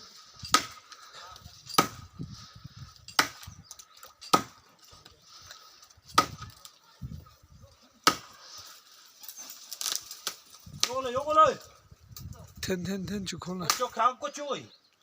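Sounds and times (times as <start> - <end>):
blade chopping wood: 0.5 - 0.8, 1.7 - 2.0, 3.2 - 3.5, 4.3 - 4.6, 6.1 - 6.5, 8.0 - 8.3.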